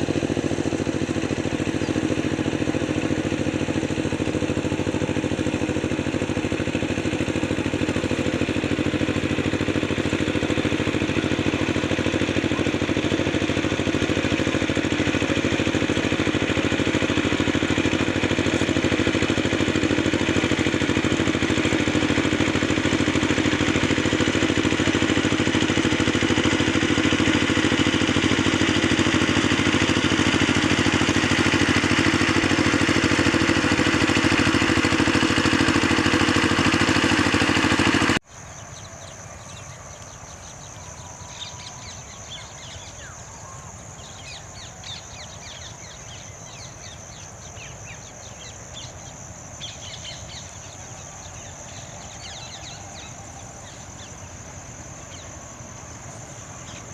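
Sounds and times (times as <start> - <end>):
engine droning: 0.0 - 56.9.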